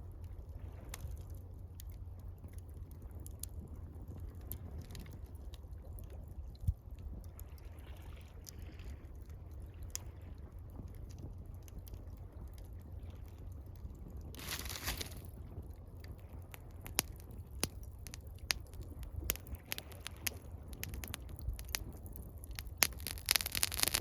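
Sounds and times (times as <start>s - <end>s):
campfire crackling and popping: 0.0s - 7.6s, 8.4s - 24.0s
gentle water: 0.0s - 24.0s
steady low rumble: 9.5s - 24.0s.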